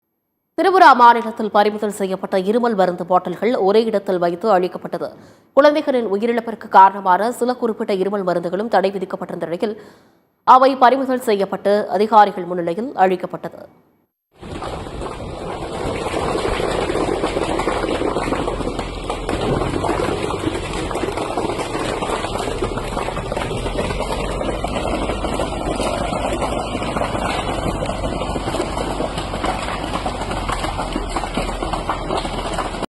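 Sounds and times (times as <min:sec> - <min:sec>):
machine engine running: 0:14.4 - 0:32.9.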